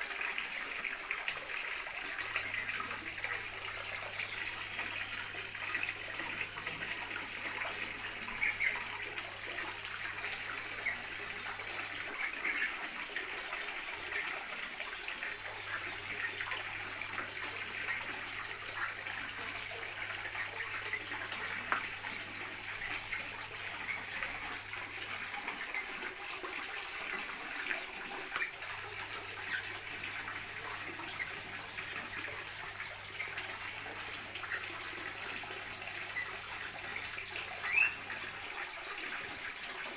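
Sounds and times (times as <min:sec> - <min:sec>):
running water rushing: 0:00.0 - 0:39.9
short high chirps or splashes: 0:37.6 - 0:38.1.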